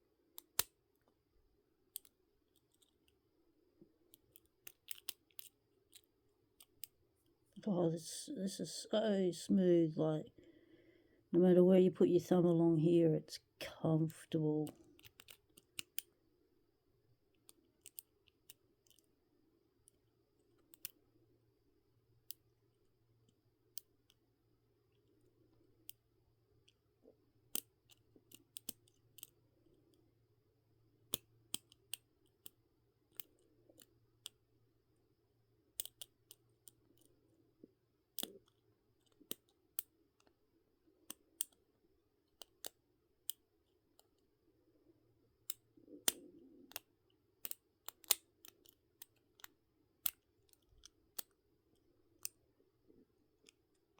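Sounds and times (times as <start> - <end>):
lock pick metal clicks: 1.9 - 3.2, 4.1 - 7.0, 14.8 - 16.1, 17.4 - 19.1, 27.5 - 29.4, 31.0 - 34.4, 35.8 - 37.1, 41.1 - 41.6, 45.4 - 51.4.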